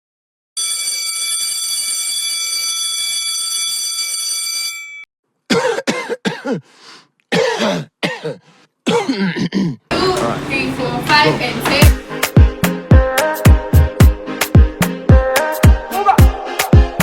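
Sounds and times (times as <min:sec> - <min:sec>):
short voiced coughs: 0:05.5 - 0:06.7, 0:07.3 - 0:09.8.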